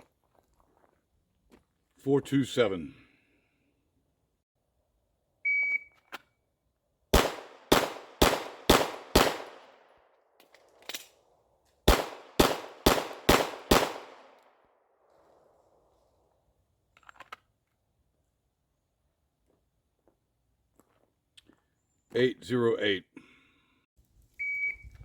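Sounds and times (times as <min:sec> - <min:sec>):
shot timer beep: 0:05.5 - 0:06.0, 0:24.4 - 0:24.9
pistol shots: 0:07.1 - 0:09.9, 0:11.8 - 0:14.5.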